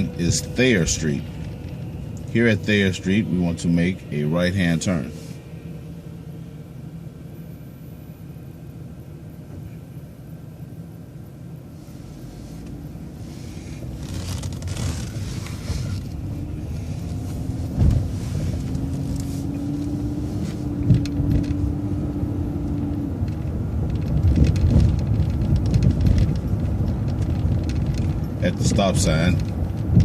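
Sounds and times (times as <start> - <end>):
bus engine accelerating: 0.0 - 30.0
short thumps: 17.0 - 19.3.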